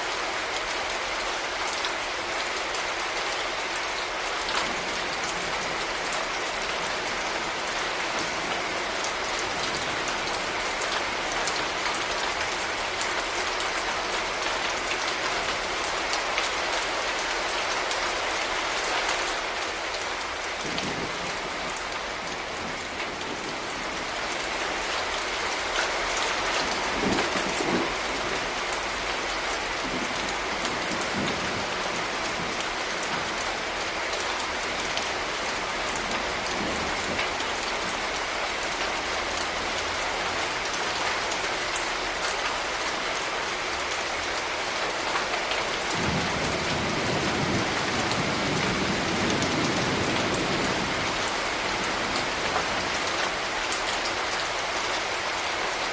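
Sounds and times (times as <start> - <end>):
steady rain falling: 0.0 - 55.9.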